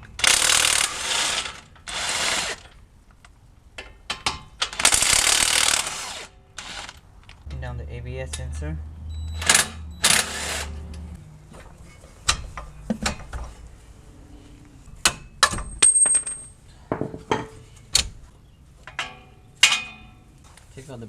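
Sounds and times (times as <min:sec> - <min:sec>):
metal tools clinking and knocking: 0:15.0 - 0:17.6, 0:18.8 - 0:20.2.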